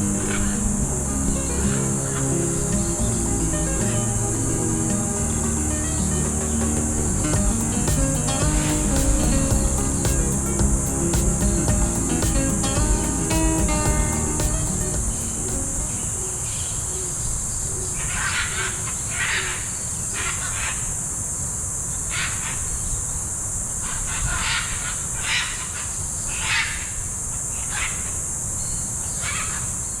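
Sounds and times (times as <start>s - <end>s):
low steady rumble: 0.0s - 15.8s
high-pitched insect drone: 0.0s - 17.6s.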